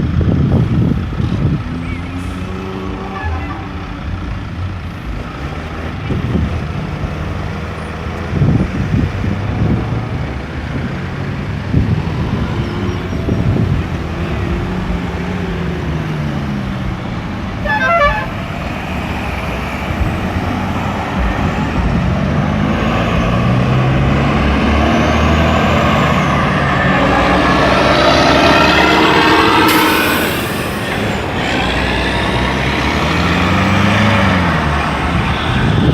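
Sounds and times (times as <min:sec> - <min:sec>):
road traffic engines: 0:00.0 - 0:35.9
short car horn toot: 0:17.6 - 0:18.4.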